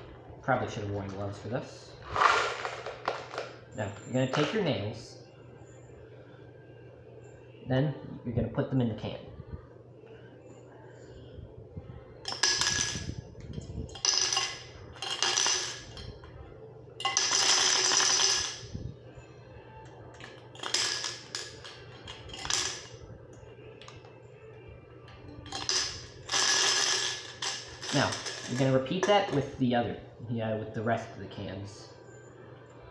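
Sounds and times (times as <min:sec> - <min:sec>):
nails rattling in metal can: 0:02.0 - 0:03.5, 0:12.3 - 0:13.1, 0:13.9 - 0:16.2, 0:17.0 - 0:18.7, 0:20.2 - 0:22.9, 0:25.4 - 0:29.4.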